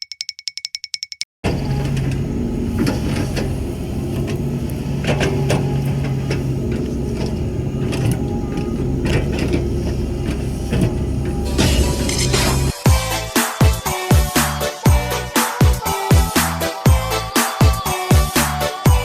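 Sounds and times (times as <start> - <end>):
metallic clanks and knocks: 1.4 - 12.8
diesel engine under load: 1.4 - 19.0.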